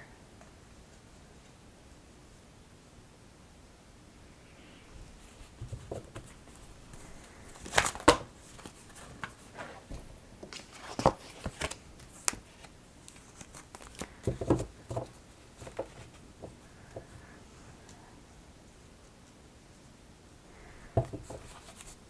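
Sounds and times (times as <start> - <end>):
cards tapping and rustling: 5.2 - 17.2, 21.0 - 22.0.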